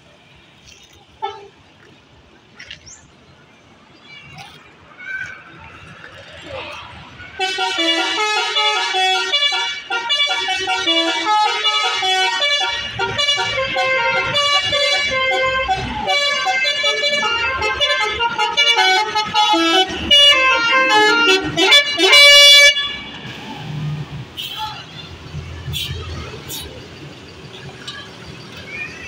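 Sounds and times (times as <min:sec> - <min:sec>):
bus horn playing melody: 0:07.4 - 0:23.2
bus engine running: 0:10.1 - 0:29.0.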